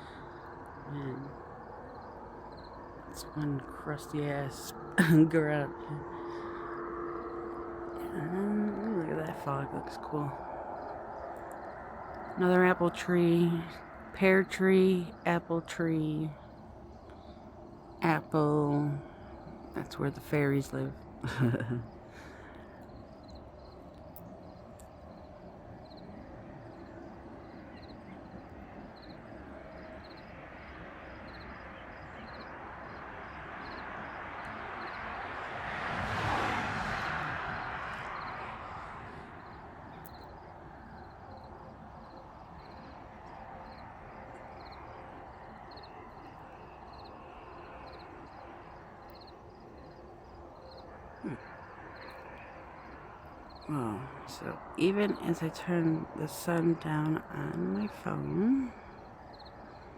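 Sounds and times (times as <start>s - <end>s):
insect chirps: 0.0s - 59.9s
outdoor background hum: 0.0s - 59.9s
vehicle passing by: 32.3s - 41.5s.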